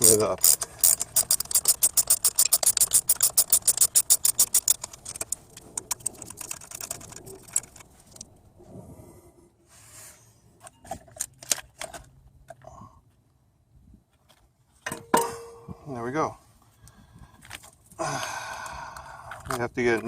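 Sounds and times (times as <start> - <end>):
ratchet wrench clicking: 0.0 - 8.2.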